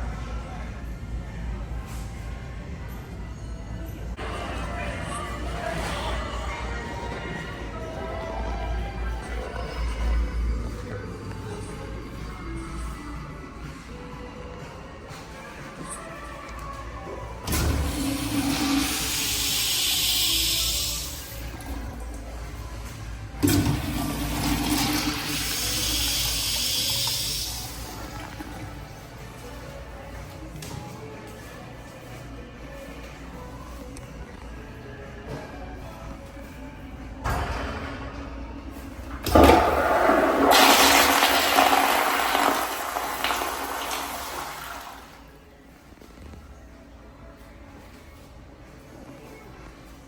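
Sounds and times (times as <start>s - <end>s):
toilet flushing: 17.5s - 21.5s, 23.4s - 28.7s, 39.2s - 45.3s.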